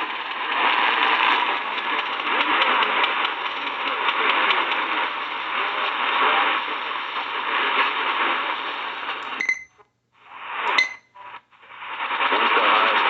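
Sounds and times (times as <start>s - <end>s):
radio static: 0.0s - 13.0s
short sharp blip: 10.7s - 11.1s.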